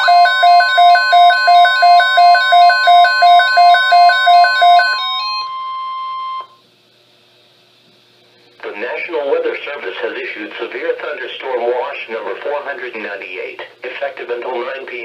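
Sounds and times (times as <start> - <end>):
steady alarm tone: 0.0 - 6.6
two-tone hi-lo alarm: 0.0 - 6.6.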